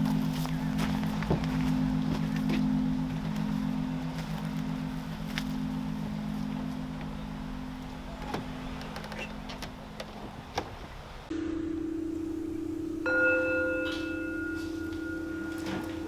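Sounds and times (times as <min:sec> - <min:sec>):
low drone: 0:00.0 - 0:16.0
bell-like ringing tone: 0:11.3 - 0:16.0.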